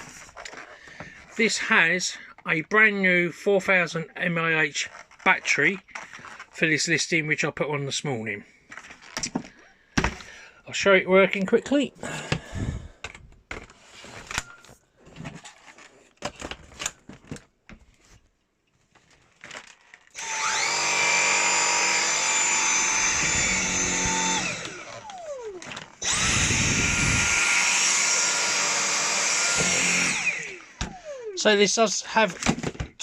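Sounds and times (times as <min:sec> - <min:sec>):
vacuum cleaner motor whine: 0:20.2 - 0:31.6.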